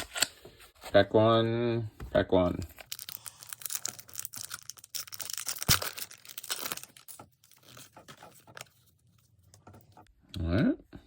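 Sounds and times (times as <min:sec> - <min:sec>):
foil wrapper tearing and crinkling: 0:02.8 - 0:07.8.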